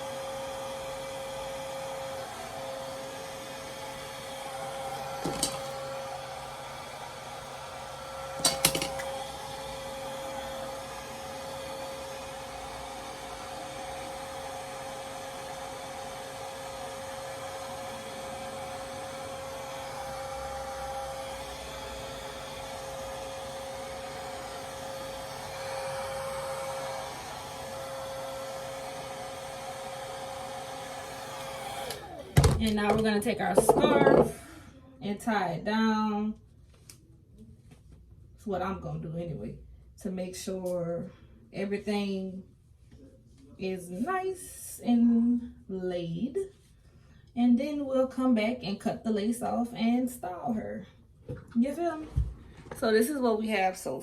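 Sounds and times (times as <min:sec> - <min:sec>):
hair dryer whining: 0:00.0 - 0:34.7.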